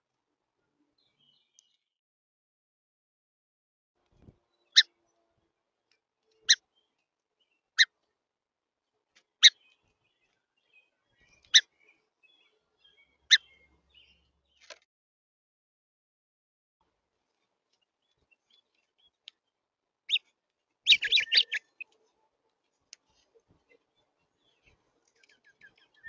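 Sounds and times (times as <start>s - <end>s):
songbird chip calls: 10.6s - 14.2s, 20.9s - 21.9s.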